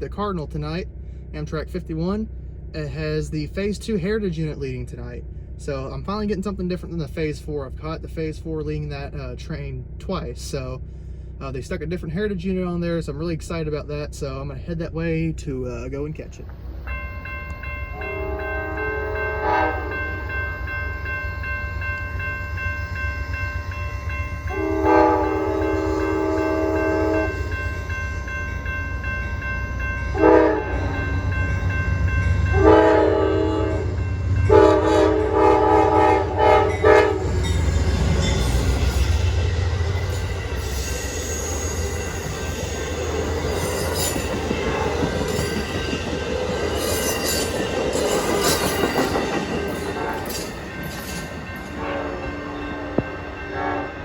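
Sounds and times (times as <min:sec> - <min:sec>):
diesel engine rumble: 0:00.0 - 0:51.8
rush of wheel and rail noise: 0:00.0 - 0:54.0
locomotive air horn blasts: 0:18.0 - 0:20.3, 0:24.5 - 0:27.5, 0:30.1 - 0:31.1, 0:32.5 - 0:37.5, 0:51.8 - 0:52.4, 0:53.5 - 0:54.0
wheels clicking over rail joints: 0:37.4 - 0:53.3.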